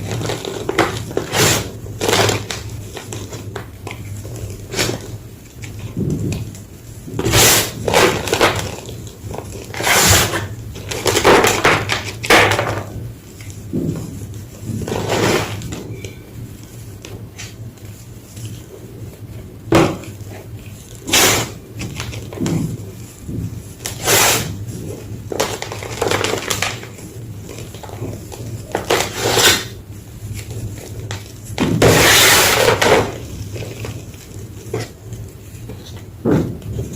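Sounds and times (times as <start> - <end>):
steady low hum: 0.0 - 36.9.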